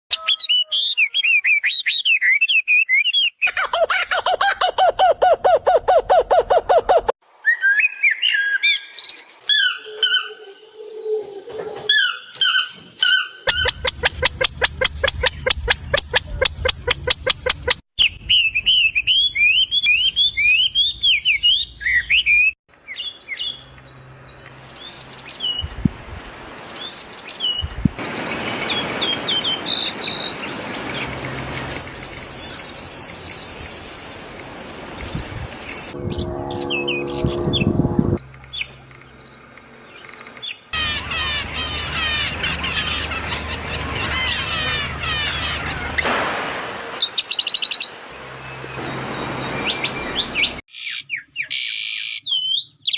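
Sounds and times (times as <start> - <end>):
small birds chirping: 12.1 - 36.0, 38.4 - 46.0
harsh buzzy bird call: 40.4 - 46.1.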